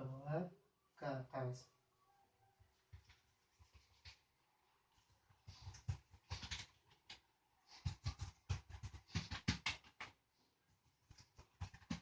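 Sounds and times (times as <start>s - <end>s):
hands patting a back: 7.7s - 10.2s, 11.1s - 12.0s.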